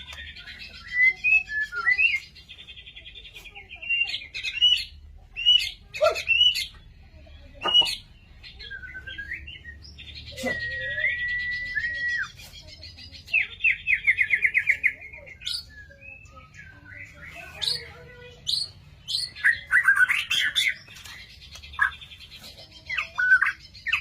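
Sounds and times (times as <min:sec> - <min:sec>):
bird singing whistles and chirps: 0:00.1 - 0:02.4, 0:07.7 - 0:12.6.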